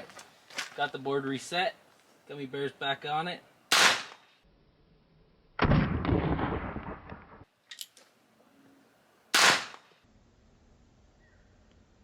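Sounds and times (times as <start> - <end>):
gunshots: 3.7 - 4.2, 5.6 - 7.4, 9.3 - 9.9.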